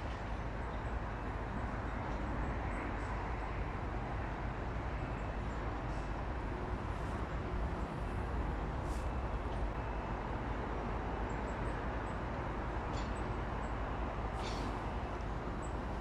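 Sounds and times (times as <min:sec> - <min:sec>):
distant road traffic: 0:00.1 - 0:16.0
faint bird chirps: 0:14.4 - 0:14.9.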